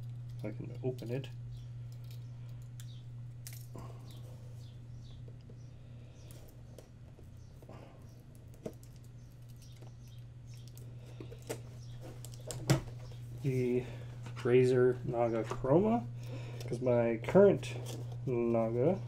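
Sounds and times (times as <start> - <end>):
steady low hum: 0.0 - 19.0
cardboard and plastic packaging rustling: 10.6 - 14.6.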